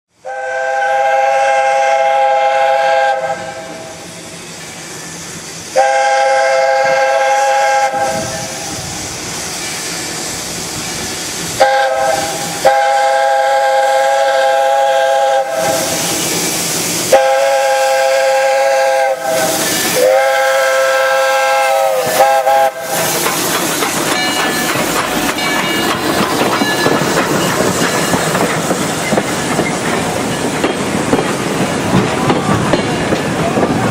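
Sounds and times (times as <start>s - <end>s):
steam locomotive chime whistle: 0.2s - 8.8s, 10.8s - 16.4s, 17.0s - 23.2s, 24.1s - 28.5s
steam hissing: 0.2s - 33.9s
steady hissing rush: 3.0s - 33.9s.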